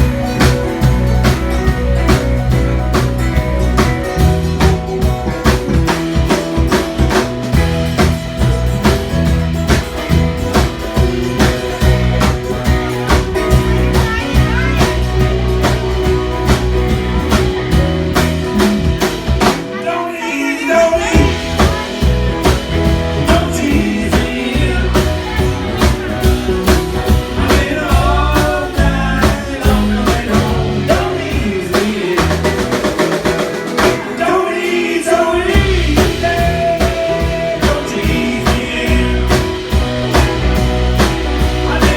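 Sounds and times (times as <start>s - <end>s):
rock band playing: 0.0s - 41.9s
person singing: 12.6s - 33.1s, 34.0s - 41.9s.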